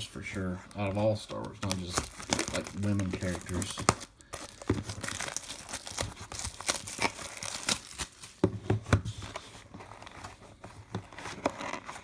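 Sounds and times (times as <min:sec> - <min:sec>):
card pack wrapper crinkling: 0:00.2 - 0:08.4.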